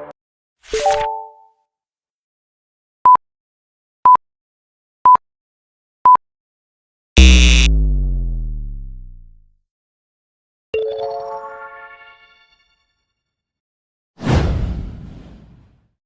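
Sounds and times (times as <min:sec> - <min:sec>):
short high electronic beeps: 0:07.2 - 0:07.8
hit with deep sliding boom: 0:07.2 - 0:09.5.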